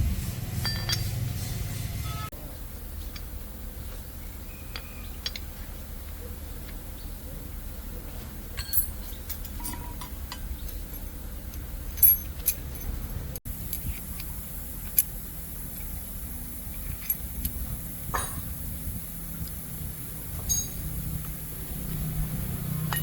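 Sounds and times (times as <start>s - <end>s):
steady low hum: 0.0s - 23.0s
metallic clinks of tools: 0.6s - 1.2s, 8.6s - 11.1s, 12.0s - 12.9s, 20.4s - 21.4s.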